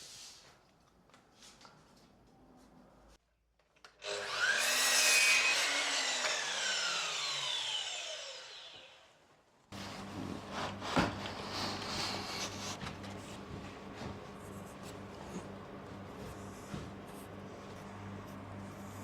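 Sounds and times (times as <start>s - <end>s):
power tool motor spinning down: 4.0s - 9.1s
low electrical hum: 9.8s - 19.0s.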